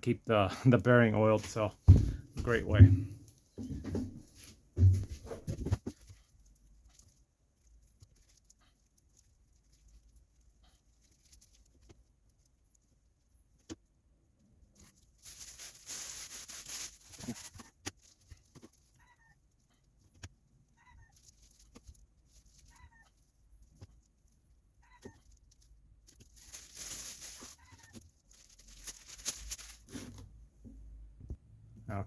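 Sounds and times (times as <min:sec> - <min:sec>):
plastic bag crinkling: 0:14.8 - 0:19.0, 0:21.0 - 0:30.2.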